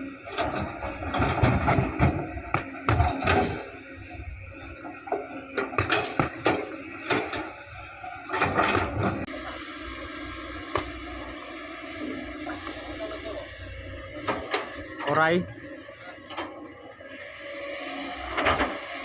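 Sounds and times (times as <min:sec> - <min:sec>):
engine hum: 0:00.0 - 0:19.0
excavator knocks and clanks: 0:00.1 - 0:09.6, 0:10.7 - 0:11.3, 0:14.0 - 0:15.6, 0:18.2 - 0:19.0.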